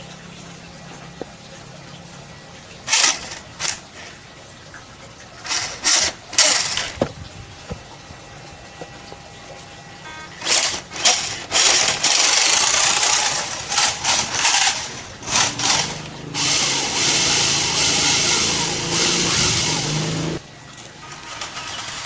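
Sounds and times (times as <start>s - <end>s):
small electric motor and gearbox: 2.9s - 3.8s, 5.4s - 7.1s, 10.3s - 20.4s, 21.1s - 22.0s.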